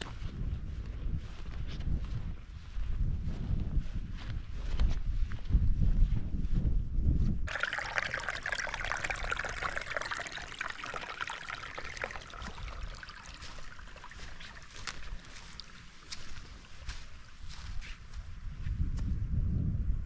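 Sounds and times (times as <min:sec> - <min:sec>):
wind rumbling on microphone: 0:00.0 - 0:20.0
trickle of running water: 0:07.5 - 0:17.8.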